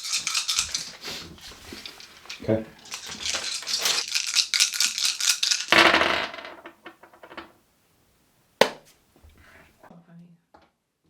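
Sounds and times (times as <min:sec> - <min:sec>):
dice clattering and tumbling: 0:00.0 - 0:07.5
dice rattling when shaken: 0:00.0 - 0:07.5.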